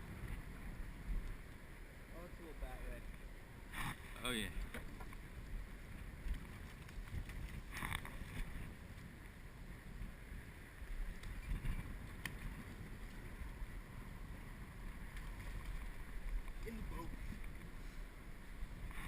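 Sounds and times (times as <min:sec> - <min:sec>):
wind buffeting microphone: 0:02.9 - 0:19.0.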